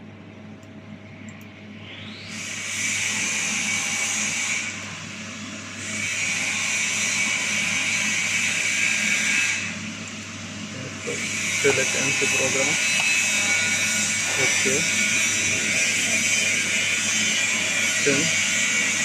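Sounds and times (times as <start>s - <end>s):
steady low hum: 0.0s - 19.0s
router motor hissing: 10.7s - 19.0s.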